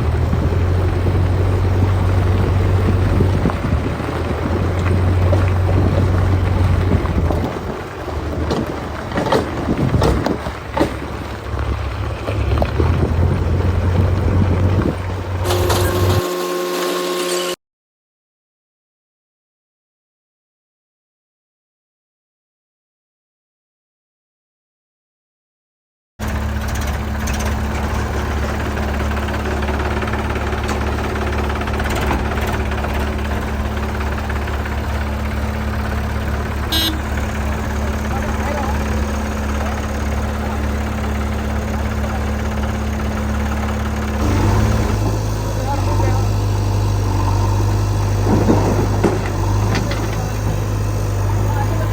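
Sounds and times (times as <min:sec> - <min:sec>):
diesel engine running: 0:00.0 - 0:17.6, 0:26.2 - 0:51.9
sharp knocks and clanks: 0:03.4 - 0:13.2, 0:47.7 - 0:51.9
short high-pitched tone: 0:15.5 - 0:17.6.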